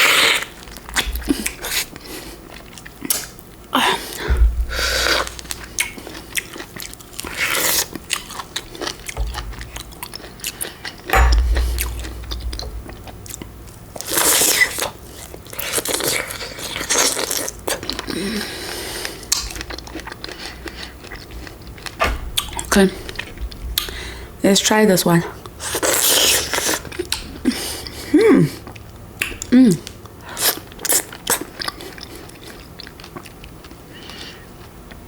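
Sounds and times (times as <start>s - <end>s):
crunching and chewing fruit: 0.0s - 11.0s, 16.0s - 22.6s, 25.9s - 35.0s
low thumps: 4.3s - 5.5s, 9.2s - 9.9s, 11.2s - 14.4s.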